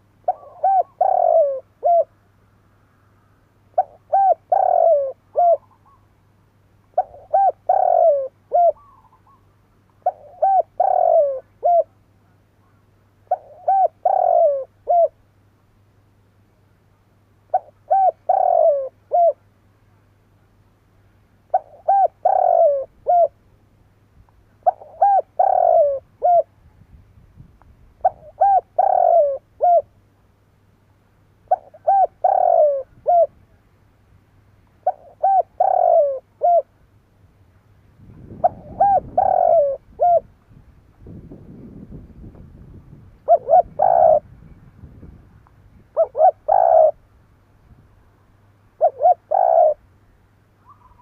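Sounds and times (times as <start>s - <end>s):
dove cooing: 0.0s - 2.2s, 3.7s - 6.1s, 6.9s - 12.0s, 12.7s - 15.2s, 17.5s - 19.4s, 21.5s - 23.4s, 24.6s - 26.6s, 28.0s - 29.9s, 31.5s - 33.4s, 34.8s - 36.7s, 38.2s - 40.3s, 43.2s - 44.3s, 45.9s - 47.0s, 48.8s - 49.9s, 50.6s - 51.0s.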